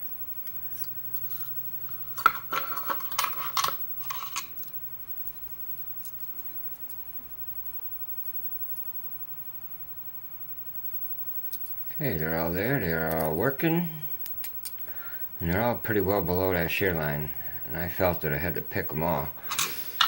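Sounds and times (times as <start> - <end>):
lock parts clicking and clinking: 1.8 - 4.5, 19.4 - 20.0.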